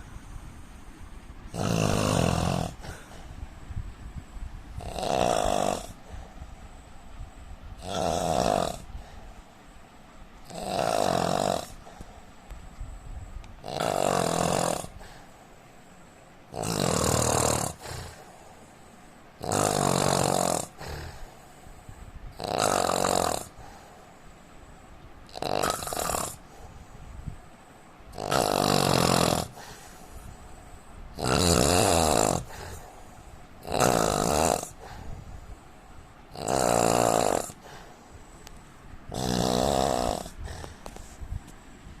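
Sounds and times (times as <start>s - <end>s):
man snoring: 1.5s - 3.1s, 4.8s - 6.1s, 7.8s - 8.9s, 10.5s - 11.9s, 13.6s - 15.2s, 16.5s - 18.3s, 19.4s - 21.3s, 22.4s - 23.7s, 25.3s - 26.5s, 28.1s - 29.9s, 31.2s - 32.9s, 33.6s - 35.1s, 36.3s - 37.8s, 39.1s - 40.9s.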